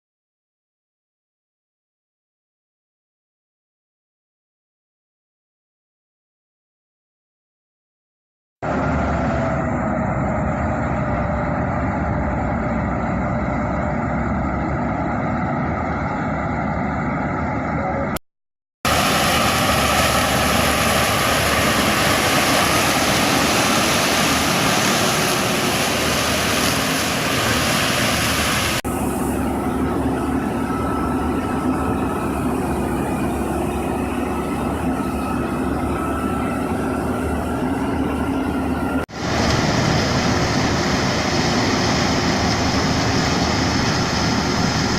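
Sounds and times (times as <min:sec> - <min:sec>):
harvester engine and machinery running: 0:08.6 - 0:18.2, 0:18.9 - 0:44.9.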